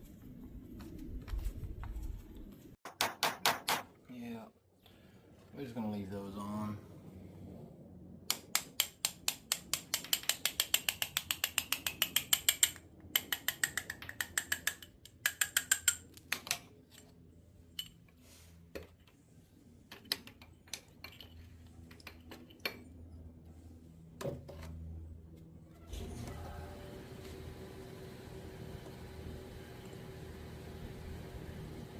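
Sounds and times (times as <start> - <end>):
ratchet wrench clicking: 8.8 - 16.1.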